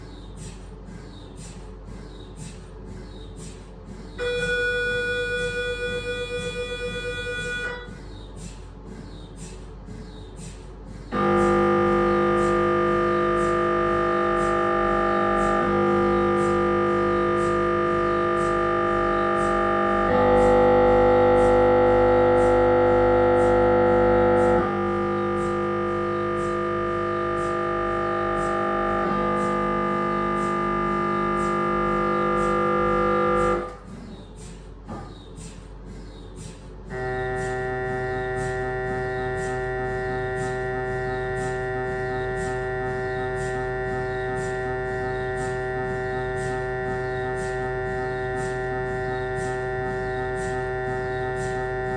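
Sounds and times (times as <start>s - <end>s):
mri scanner buzzing drone: 4.2s - 8.0s, 11.1s - 33.9s, 36.9s - 51.9s.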